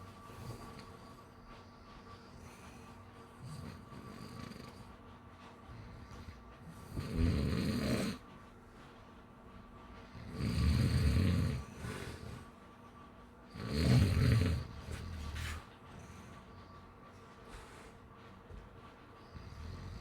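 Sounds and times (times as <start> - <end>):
fluttering snores: 7.0 - 8.2, 10.2 - 12.3, 13.6 - 15.3.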